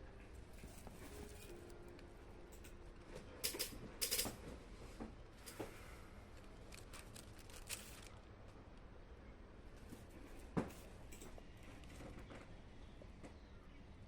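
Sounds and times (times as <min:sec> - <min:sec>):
kitten clicks and rustles: 0:06.4 - 0:08.6.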